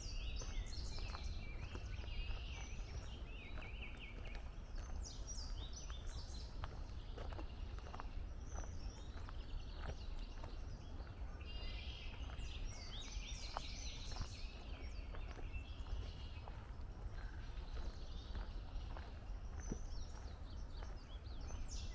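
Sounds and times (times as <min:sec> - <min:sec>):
songbirds singing and calling: 0:00.0 - 0:21.9
footsteps on dirt trail: 0:00.1 - 0:21.9.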